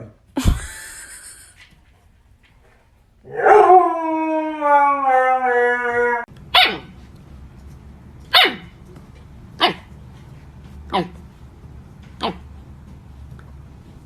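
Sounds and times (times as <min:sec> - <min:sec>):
dog howling: 0:03.3 - 0:06.3
dog barking: 0:06.5 - 0:06.9, 0:08.3 - 0:08.7, 0:09.6 - 0:09.9, 0:10.9 - 0:11.2, 0:12.2 - 0:12.4.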